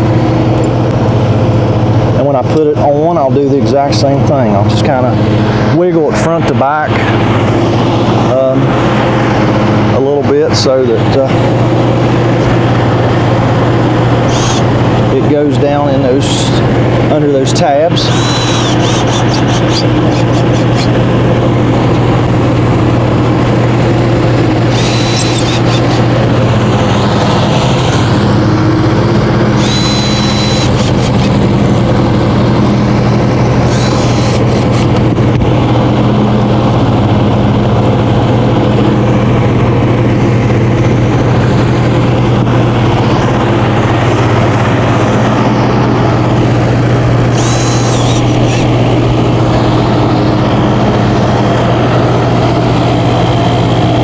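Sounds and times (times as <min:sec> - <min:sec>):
machine drone with low hum: 0:00.0 - 0:54.0
high-pitched whirring bursts: 0:14.2 - 0:15.0, 0:17.9 - 0:21.4, 0:24.5 - 0:28.1, 0:29.5 - 0:31.5, 0:33.7 - 0:35.1, 0:46.4 - 0:49.8.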